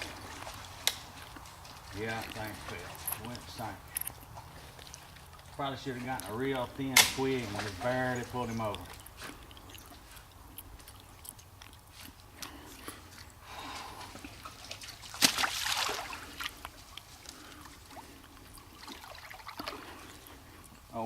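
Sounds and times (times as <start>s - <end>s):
water sloshing and trickling: 0.0s - 21.0s
sharp water splash: 14.6s - 16.6s.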